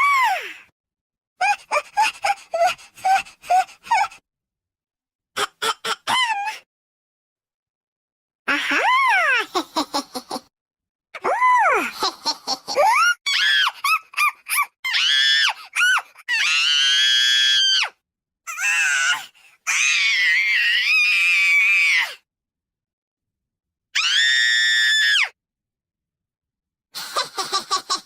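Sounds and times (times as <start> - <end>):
woman screaming and shrieking: 8.5 - 9.5, 11.2 - 11.9, 14.9 - 22.2, 24.0 - 25.4.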